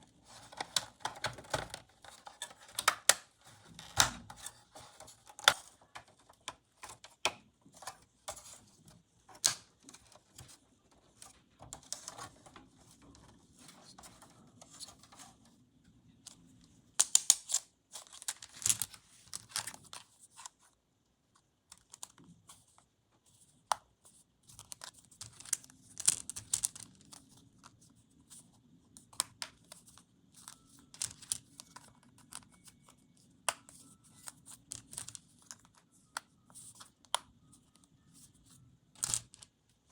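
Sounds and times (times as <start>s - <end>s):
toy pieces clicking and tapping: 24.7s - 27.0s, 30.9s - 31.8s.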